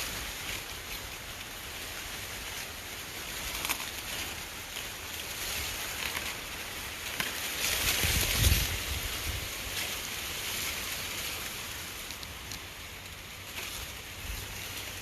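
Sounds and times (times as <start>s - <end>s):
wind buffeting microphone: 7.9s - 9.6s.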